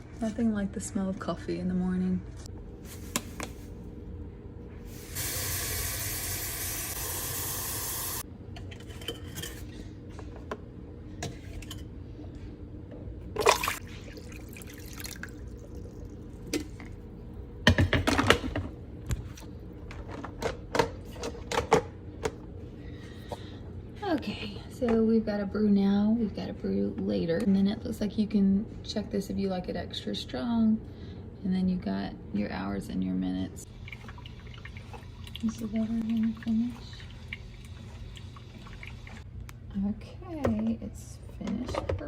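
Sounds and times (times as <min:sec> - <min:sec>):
water running: 0:04.9 - 0:08.2, 0:13.4 - 0:16.8, 0:33.6 - 0:39.3.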